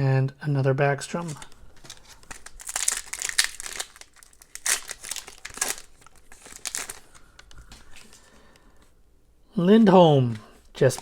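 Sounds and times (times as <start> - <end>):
foil wrapper tearing and crinkling: 1.2 - 7.5.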